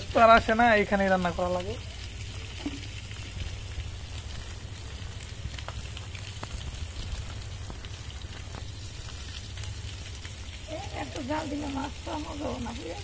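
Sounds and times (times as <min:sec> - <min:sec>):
fish sizzling in hot oil: 0:00.0 - 0:13.0
low steady rumble: 0:00.0 - 0:13.0
sharp crackles: 0:00.0 - 0:13.0.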